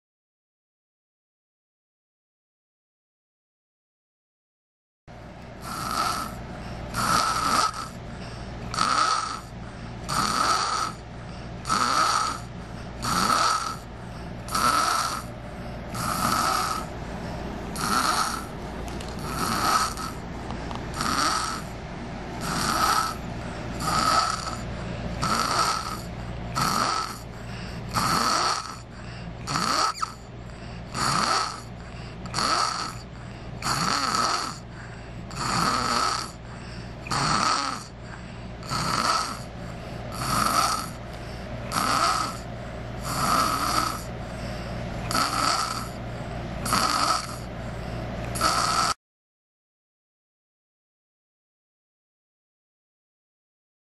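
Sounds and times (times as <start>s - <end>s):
child snoring: 5.6s - 21.8s, 22.4s - 49.0s.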